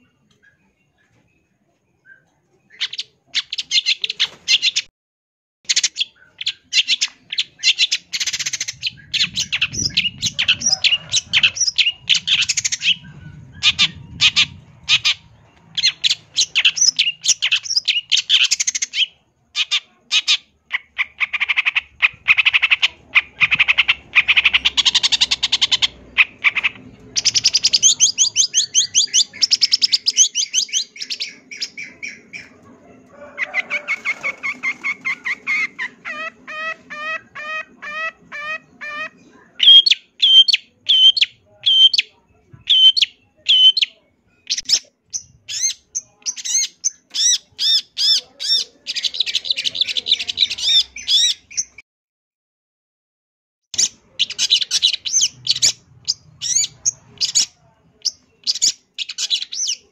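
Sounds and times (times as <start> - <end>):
bird singing chirps and trills: 5.7 - 32.6.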